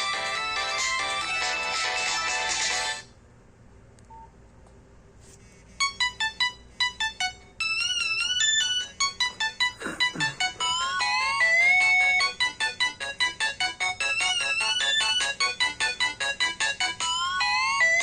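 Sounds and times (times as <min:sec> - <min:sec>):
phone ringtone beeping notes: 0:05.8 - 0:09.6, 0:10.6 - 0:13.1.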